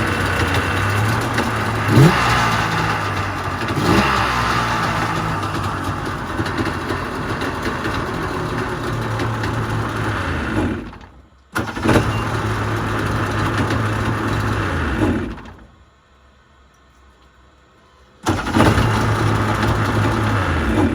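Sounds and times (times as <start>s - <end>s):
jet ski engine running: 0.0s - 11.0s, 18.3s - 20.9s.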